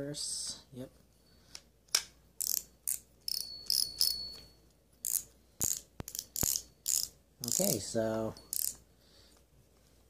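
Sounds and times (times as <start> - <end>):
high ringing tone: 3.3 - 4.7
fishing reel clicking: 5.0 - 7.8, 8.5 - 8.8.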